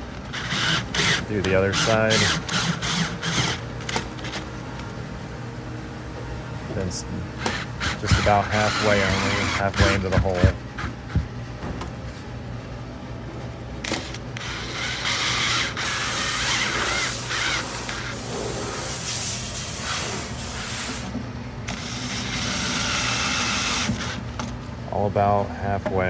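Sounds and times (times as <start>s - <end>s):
drill driving screws into wood: 0.3s - 4.4s, 7.4s - 11.2s, 13.8s - 18.4s, 21.7s - 24.2s.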